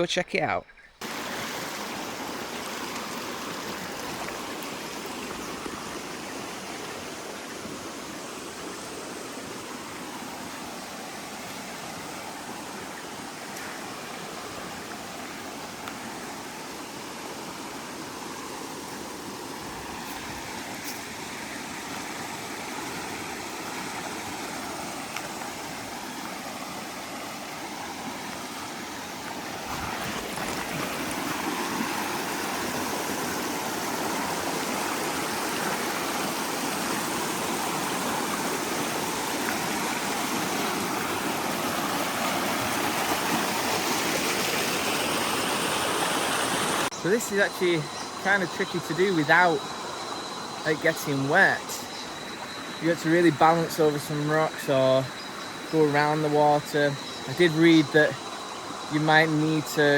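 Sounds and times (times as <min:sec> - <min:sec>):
water rushing over rocks: 0:01.0 - 0:59.9.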